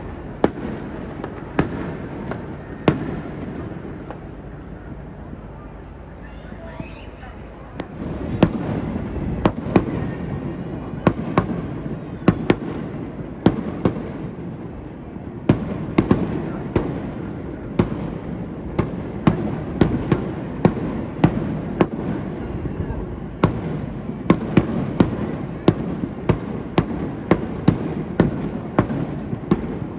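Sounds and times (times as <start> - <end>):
fireworks bursting with sharp bangs: 0.0 - 5.6, 6.2 - 29.9
continuous rumble of fireworks barrage: 0.0 - 29.9.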